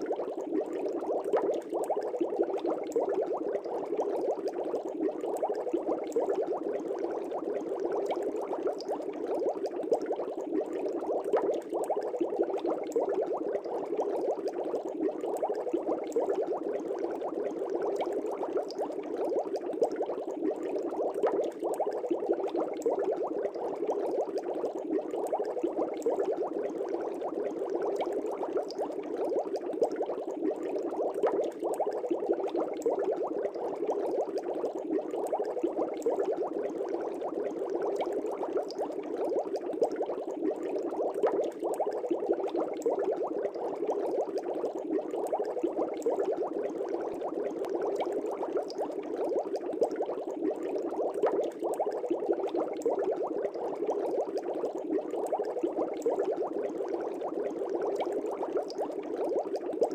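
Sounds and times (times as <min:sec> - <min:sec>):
aquarium air bubbling: 0:00.0 - 0:59.9.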